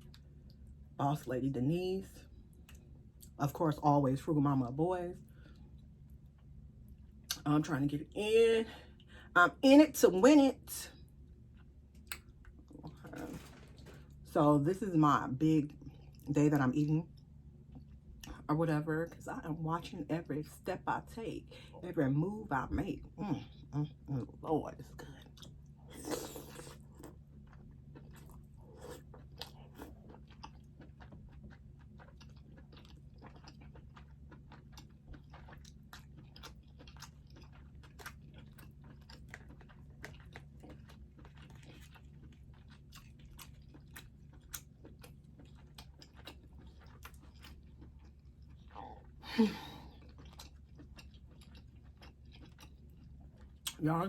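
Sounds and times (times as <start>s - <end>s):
person chewing and smacking food: 11.1s - 14.2s, 25.2s - 53.8s.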